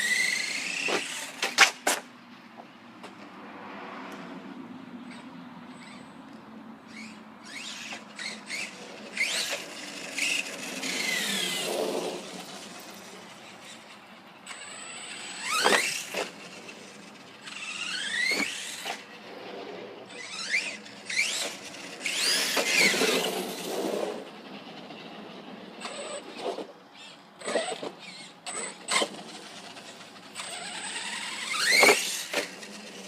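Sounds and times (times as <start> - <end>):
electric motor whining: 6.9 - 13.9, 14.5 - 24.2, 27.0 - 33.0.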